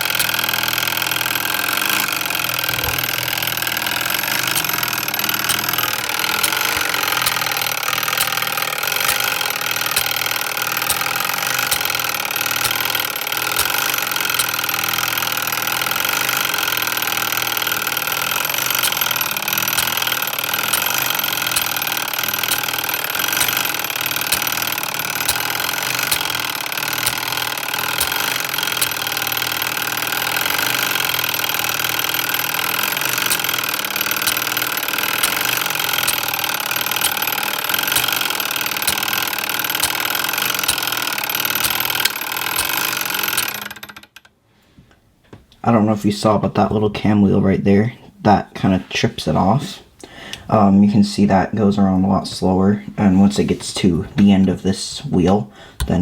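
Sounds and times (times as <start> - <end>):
clockwork mechanism whirring: 0.0 - 44.1
sharp mechanical clicks: 0.0 - 44.3.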